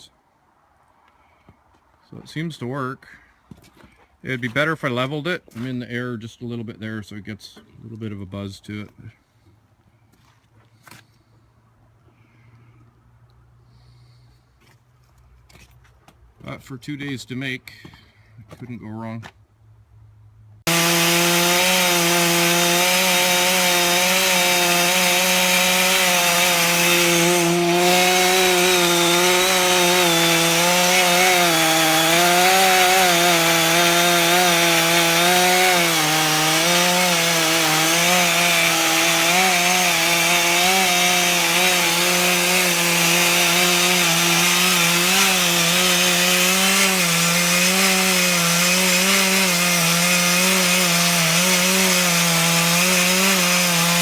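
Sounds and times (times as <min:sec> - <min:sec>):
chainsaw cutting through log: 0:20.7 - 0:54.0.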